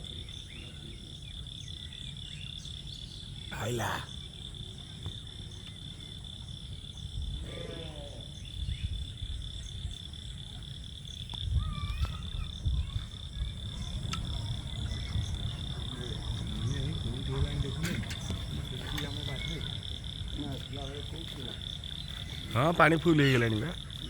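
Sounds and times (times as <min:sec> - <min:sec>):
crickets droning: 0:00.0 - 0:24.0
frogs calling: 0:00.0 - 0:24.0
low rumble: 0:12.6 - 0:21.2.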